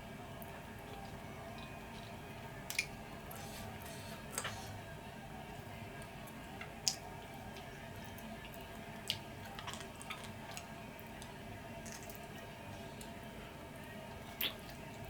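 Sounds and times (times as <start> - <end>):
low background hum: 0.0 - 15.0
person chewing wet mouth smacks: 2.7 - 3.6.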